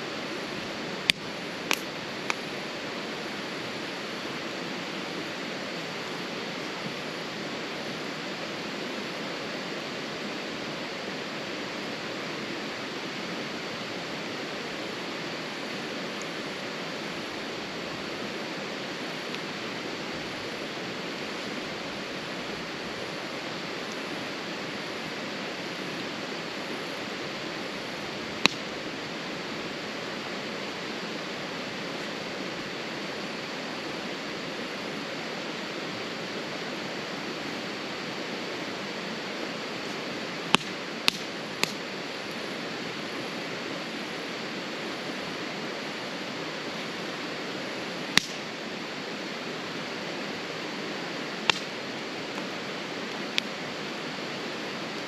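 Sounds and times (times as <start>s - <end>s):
steady rushing noise: 0.0s - 55.0s
sharp crack: 28.4s - 28.7s, 40.5s - 41.8s, 48.1s - 48.5s, 51.4s - 51.8s.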